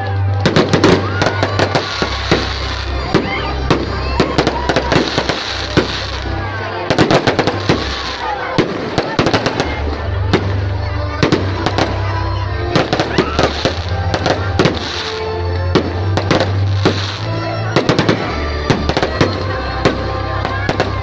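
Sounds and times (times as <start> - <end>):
fireworks bangs and crackles: 0.0 - 21.0
loud bass-heavy music: 0.0 - 21.0.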